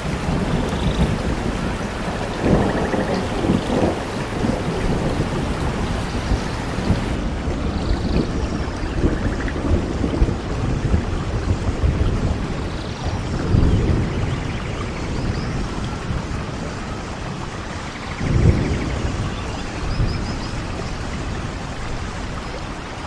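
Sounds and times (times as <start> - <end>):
thunder rumbling: 0.0 - 7.2
heavy rain: 0.0 - 23.0.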